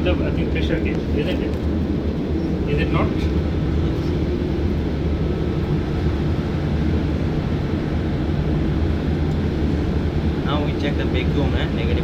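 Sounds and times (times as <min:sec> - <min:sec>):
shipboard machinery drone: 0:00.0 - 0:12.0.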